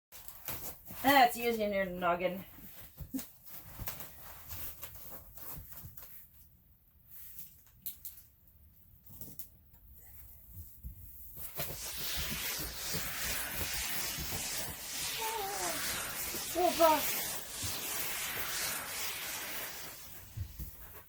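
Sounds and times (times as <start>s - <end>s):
steady hiss: 11.5s - 21.0s.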